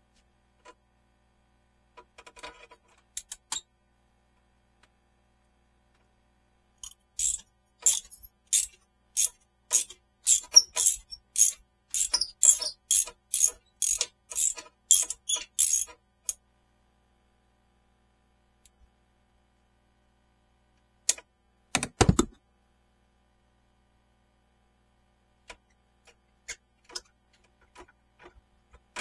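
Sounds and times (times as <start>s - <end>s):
ratchet wrench ratcheting: 6.8s - 15.9s.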